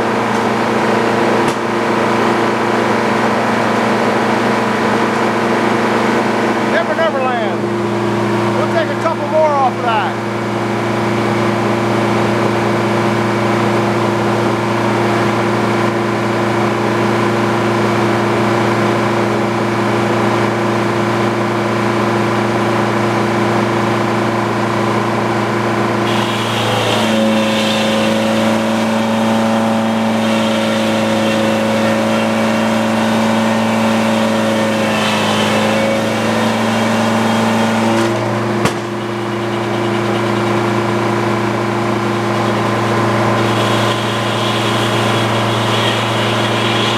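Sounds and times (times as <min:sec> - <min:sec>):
sawmill engine running: 0:00.0 - 0:46.9
saw blade rasping through wood: 0:26.1 - 0:38.2.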